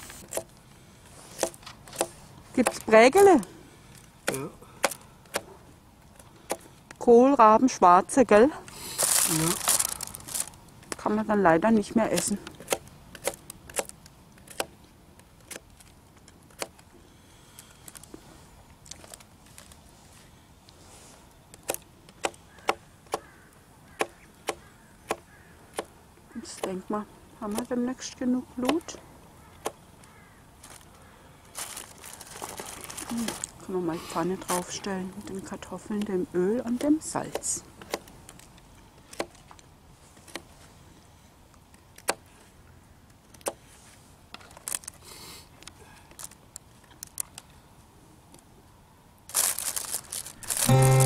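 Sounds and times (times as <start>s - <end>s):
campfire crackling: 8.6s - 20.0s
fire hissing: 8.7s - 10.8s
dry wood cracking and snapping: 8.9s - 11.1s, 11.9s - 16.9s, 17.5s - 18.1s, 18.7s - 19.8s, 30.6s - 33.6s, 44.4s - 45.0s, 45.6s - 47.5s, 49.3s - 51.0s.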